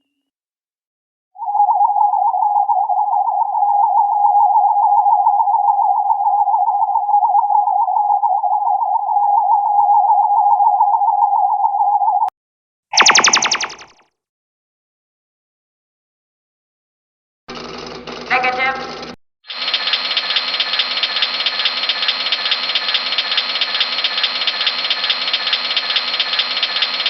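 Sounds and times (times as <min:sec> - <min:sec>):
warbling electronic tone: 0:01.4 - 0:12.3, 0:13.0 - 0:14.0
buzzy electronic burst: 0:13.0 - 0:14.0.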